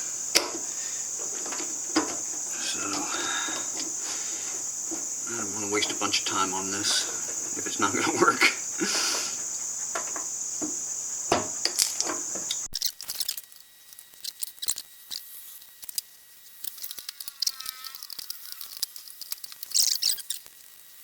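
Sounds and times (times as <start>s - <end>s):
steady high hiss: 0.0s - 21.0s
small clicks and taps on metal: 11.8s - 20.5s
brief squeak: 19.7s - 20.5s.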